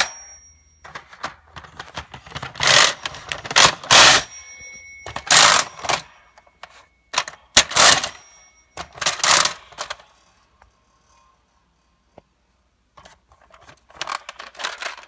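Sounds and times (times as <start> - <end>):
typewriter bell ringing: 0.0 - 1.3, 2.5 - 9.8
toy typewriter mechanical strokes: 2.5 - 4.2.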